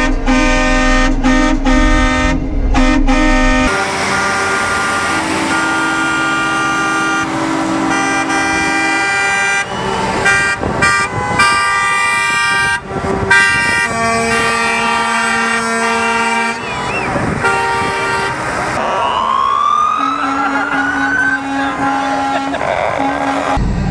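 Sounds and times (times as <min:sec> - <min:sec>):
truck air horns blasting: 0:00.0 - 0:23.8.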